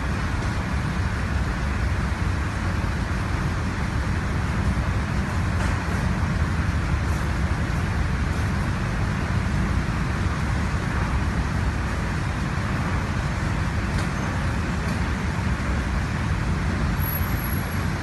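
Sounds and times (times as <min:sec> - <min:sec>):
constant noisy hiss: 0:00.0 - 0:18.0.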